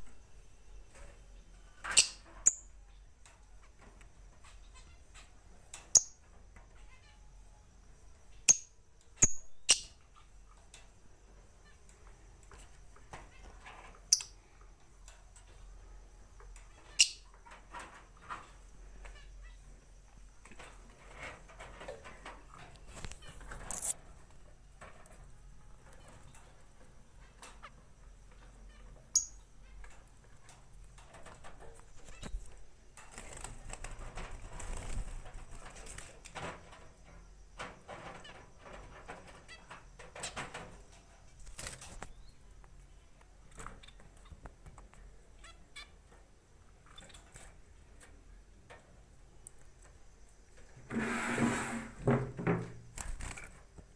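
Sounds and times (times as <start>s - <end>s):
clicks and rustles of movement: 20.4s - 24.0s.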